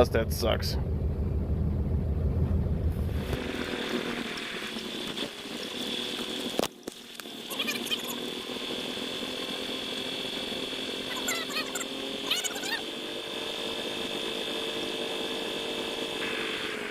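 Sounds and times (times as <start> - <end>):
machinery hum with high whine: 0.0 - 16.9.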